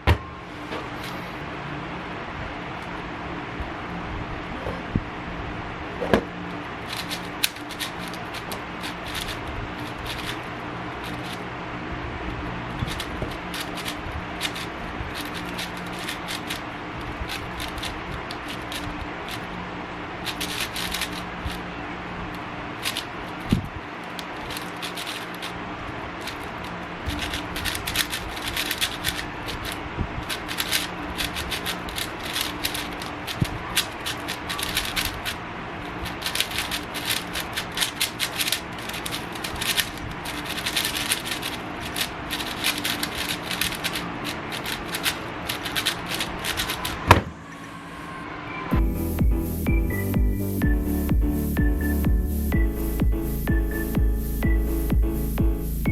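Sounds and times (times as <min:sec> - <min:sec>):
plastic puzzle cube clicking: 0:06.9 - 0:11.4, 0:12.8 - 0:19.4, 0:20.2 - 0:21.6, 0:22.8 - 0:23.5, 0:24.2 - 0:25.5, 0:26.2 - 0:35.4, 0:36.0 - 0:47.1.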